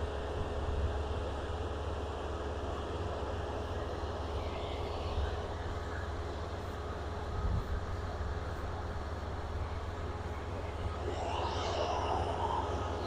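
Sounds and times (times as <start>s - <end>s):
combine harvester engine drone: 0.0s - 13.0s
steady machine whine: 0.0s - 13.0s.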